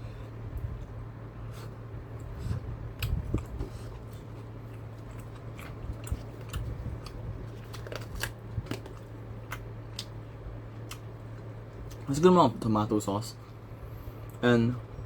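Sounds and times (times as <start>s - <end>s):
person chewing food: 0.1s - 12.1s.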